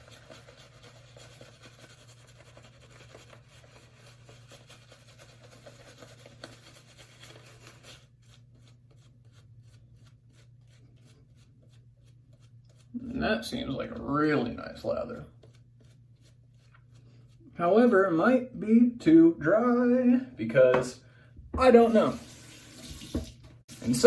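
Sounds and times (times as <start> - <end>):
scratchy shaving brush strokes: 0.0 - 17.4.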